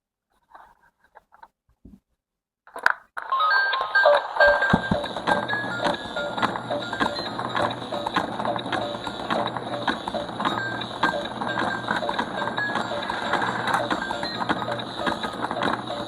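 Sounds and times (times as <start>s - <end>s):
beeping electronic tune: 3.4s - 16.0s
toy motor hum: 4.4s - 16.0s.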